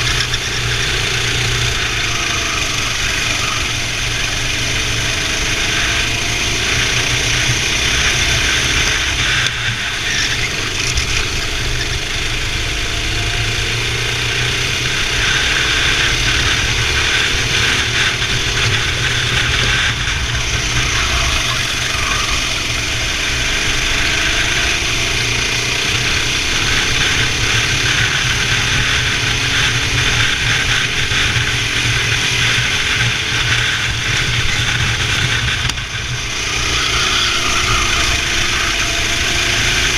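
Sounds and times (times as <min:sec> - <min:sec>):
kart engine revving: 0:00.0 - 0:39.9.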